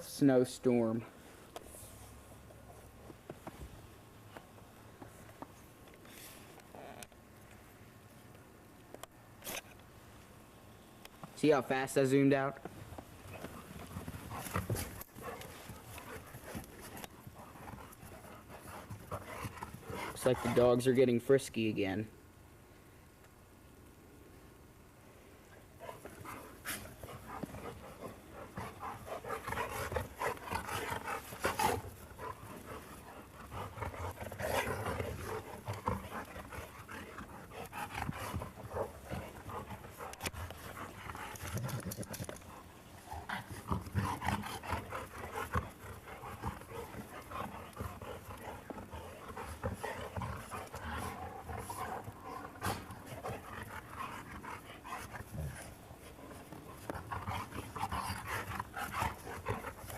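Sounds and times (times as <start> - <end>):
dogs scuffling: 12.6 - 20.9
dogs panting: 13.1 - 21.0, 25.5 - 59.9
dogs growling: 13.2 - 20.9, 25.8 - 59.9.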